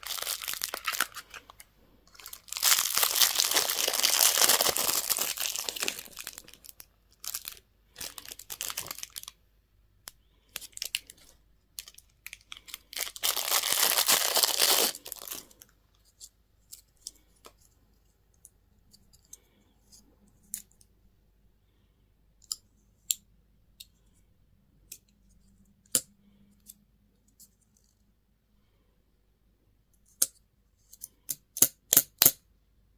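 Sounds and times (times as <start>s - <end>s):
packaging tearing and crinkling: 0.0s - 9.3s, 11.8s - 15.6s.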